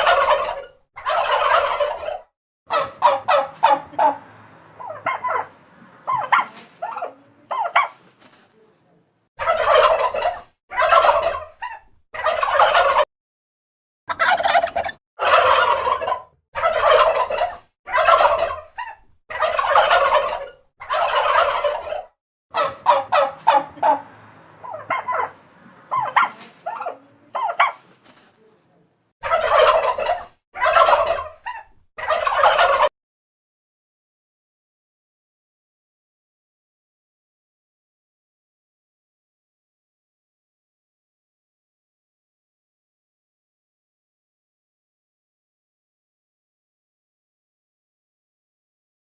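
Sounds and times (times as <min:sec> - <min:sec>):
turkey gobbling: 0:00.0 - 0:08.2, 0:09.4 - 0:13.1, 0:14.1 - 0:28.0, 0:29.2 - 0:32.9.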